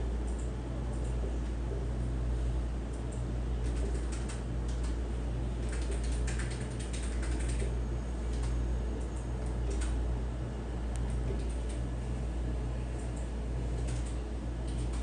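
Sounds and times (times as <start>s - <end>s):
low electrical hum: 0.0s - 15.0s
keys clicking on console: 2.9s - 5.0s, 5.6s - 10.0s, 11.1s - 11.8s, 13.0s - 15.0s.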